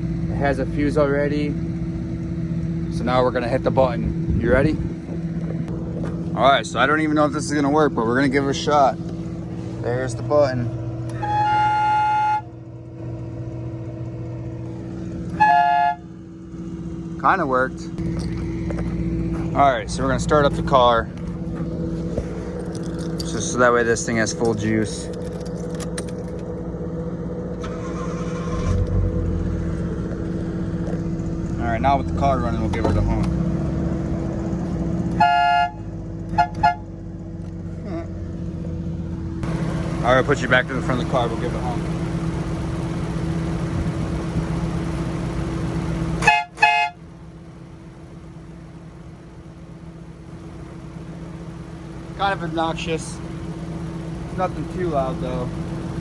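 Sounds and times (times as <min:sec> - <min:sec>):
car engine starting and rumbling: 0:00.0 - 0:56.0
two-note car horn toots: 0:11.1 - 0:12.6, 0:15.3 - 0:16.1, 0:35.1 - 0:36.9, 0:46.2 - 0:47.1.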